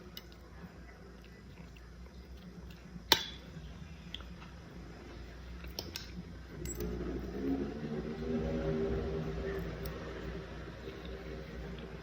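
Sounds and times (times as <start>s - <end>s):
quiet chewing: 0.0s - 3.1s, 3.7s - 6.2s.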